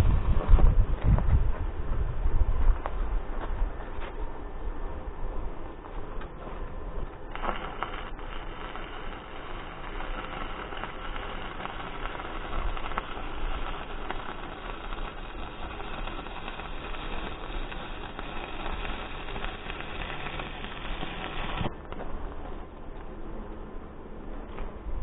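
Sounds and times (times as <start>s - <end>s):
low steady rumble: 0.0s - 25.0s
arc welding crackling hiss: 7.2s - 23.2s.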